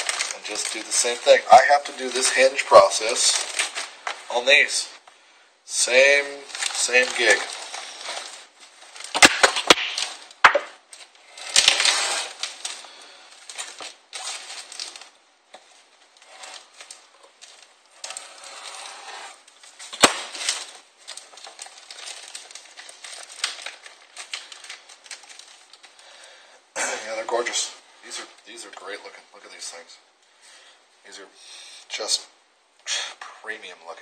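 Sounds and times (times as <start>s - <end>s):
rustling and scraping: 5.9s - 26.0s.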